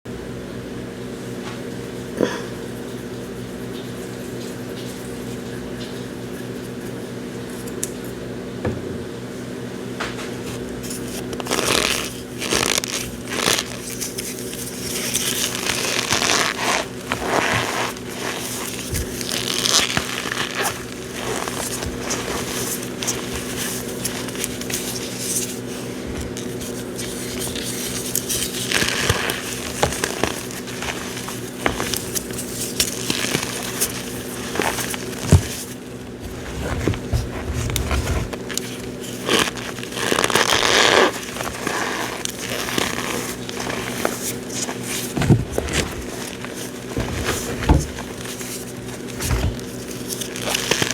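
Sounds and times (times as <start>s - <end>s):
cornstarch crunching and squeaking: 10.8s - 50.9s.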